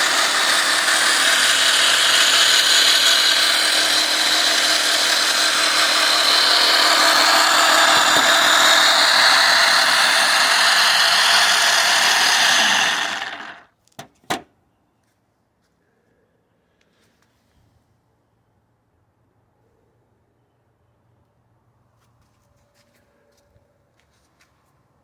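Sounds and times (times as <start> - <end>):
band saw running: 0.0 - 13.7.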